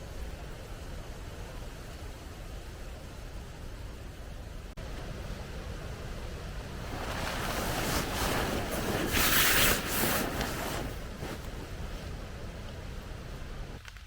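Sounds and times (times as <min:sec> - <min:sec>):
wind rumble on microphone: 0:00.0 - 0:13.8
wind gusting: 0:04.8 - 0:13.8.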